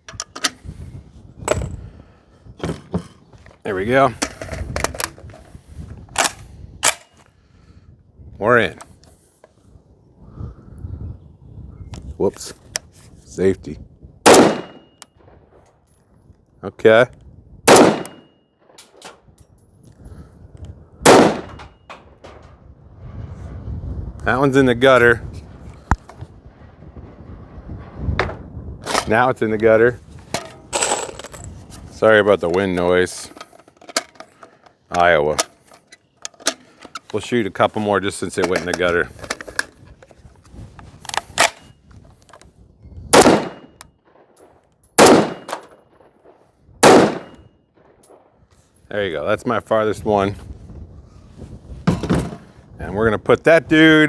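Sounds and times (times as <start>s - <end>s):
rifle shot: 14.2s - 15.0s, 17.7s - 18.8s, 21.0s - 21.7s, 43.1s - 44.4s, 45.0s - 47.5s
brass casings clinking: 30.4s - 31.5s.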